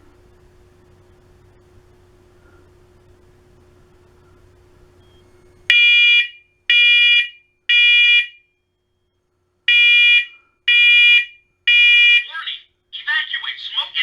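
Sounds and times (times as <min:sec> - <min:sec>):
smoke alarm beeps: 0:05.0 - 0:12.3.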